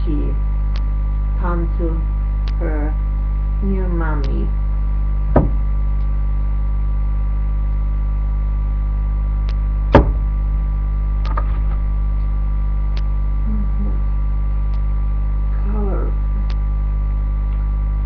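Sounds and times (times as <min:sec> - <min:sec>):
electrical mains hum: 0:00.0 - 0:18.0
sharp knock: 0:05.3 - 0:05.7, 0:09.9 - 0:10.3.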